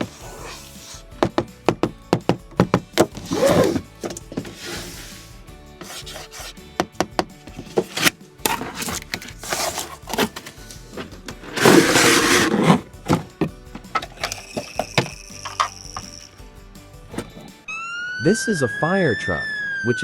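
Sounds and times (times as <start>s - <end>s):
soft background music: 0.0s - 19.9s
model truck parts scraping: 3.1s - 6.6s, 7.5s - 14.8s.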